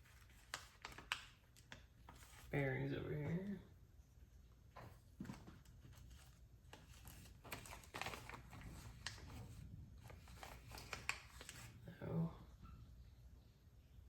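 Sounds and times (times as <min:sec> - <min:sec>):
plastic bags crinkling: 0:00.0 - 0:02.6, 0:05.2 - 0:11.9.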